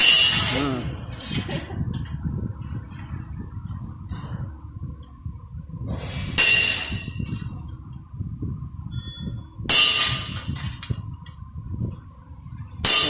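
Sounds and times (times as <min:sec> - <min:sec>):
low rumble: 0:00.3 - 0:13.0
loud metallic clangs: 0:06.3 - 0:07.2, 0:09.7 - 0:10.8.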